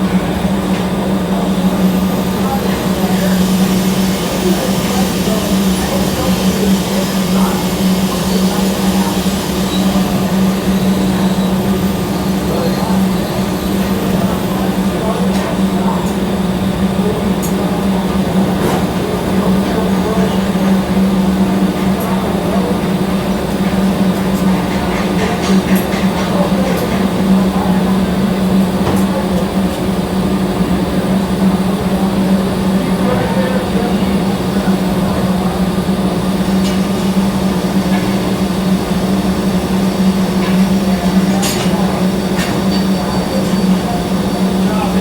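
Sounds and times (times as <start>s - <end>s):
welding arc humming and buzzing: 0.4s - 15.0s.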